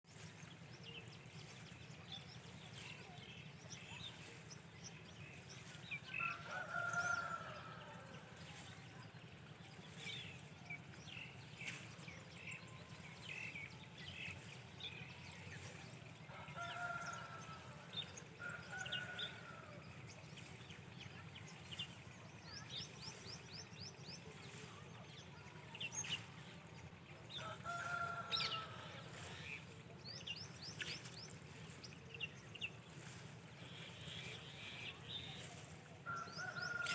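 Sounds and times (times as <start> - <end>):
small birds chirping: 0.2 - 36.9
roosters crowing: 6.0 - 8.4, 16.2 - 19.8, 27.3 - 29.6, 36.0 - 36.9.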